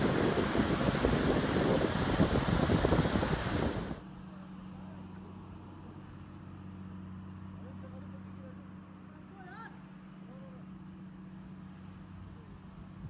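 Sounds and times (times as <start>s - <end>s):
steady low hum: 0.0s - 4.0s
wind buffeting microphone: 0.0s - 4.0s.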